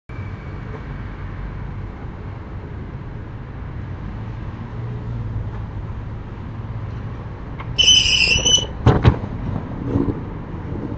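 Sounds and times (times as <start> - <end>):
distant outdoor noise: 7.6 - 9.1.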